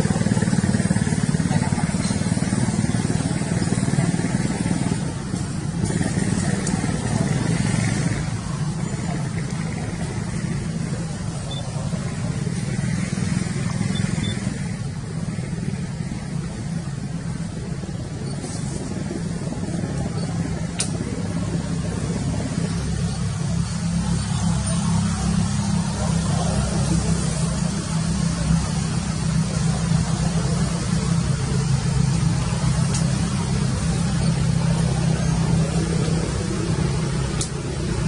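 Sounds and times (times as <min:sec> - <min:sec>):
engine running steadily: 0:00.0 - 0:38.0
sharp click: 0:37.4 - 0:37.6.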